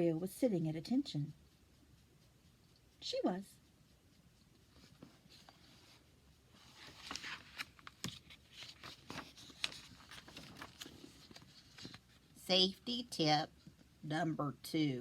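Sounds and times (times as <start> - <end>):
paper pages rustling: 6.6 - 12.4.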